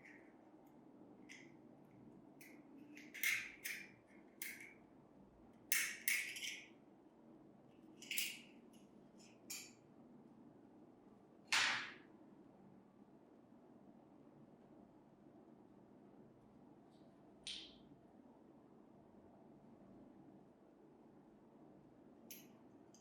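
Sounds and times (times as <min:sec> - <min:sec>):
small metal parts clinking and scraping: 0:05.7 - 0:06.7.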